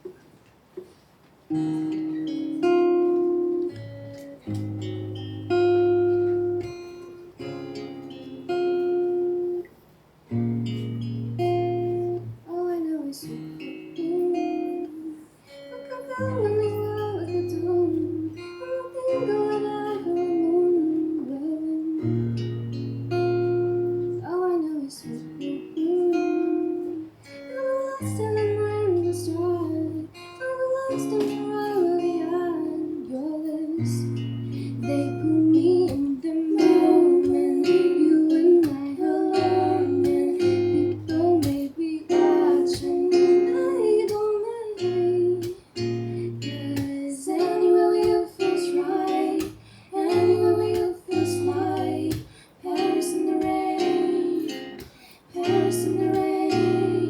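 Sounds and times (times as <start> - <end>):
acoustic guitar strumming: 1.5 - 12.5, 13.2 - 24.3, 25.0 - 57.0
person singing: 14.0 - 22.3, 24.1 - 57.0.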